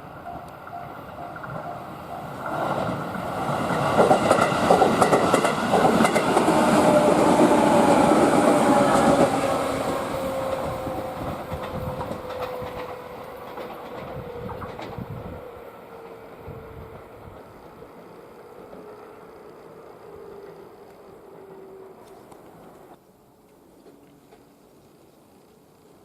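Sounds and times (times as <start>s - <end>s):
electric train passing: 0.0s - 23.0s
wheels clicking over rail joints: 0.1s - 15.4s.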